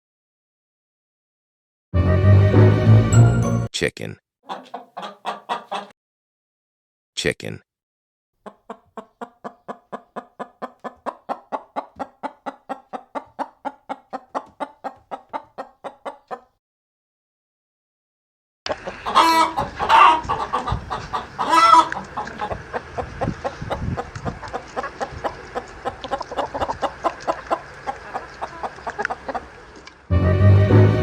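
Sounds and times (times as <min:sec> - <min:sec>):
chicken clucking: 0:04.5 - 0:05.9, 0:08.4 - 0:16.6, 0:18.7 - 0:30.1
chicken squawks: 0:04.5 - 0:05.9, 0:08.4 - 0:16.5, 0:18.7 - 0:29.9.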